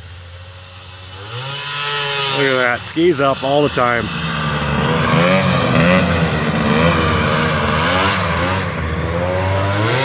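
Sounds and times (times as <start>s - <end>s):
snowmobile engine revving: 0.0s - 10.0s.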